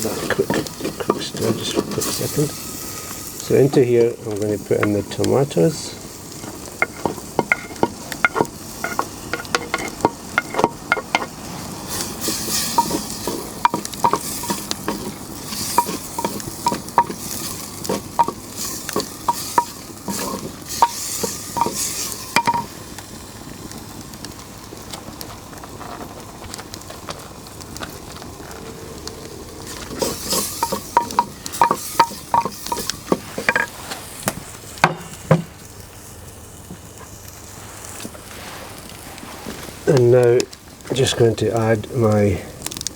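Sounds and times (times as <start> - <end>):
utensil clinking clay pot: 0.0 - 2.6, 3.4 - 5.8, 6.4 - 22.7, 29.6 - 33.8
frying hiss: 0.0 - 42.9.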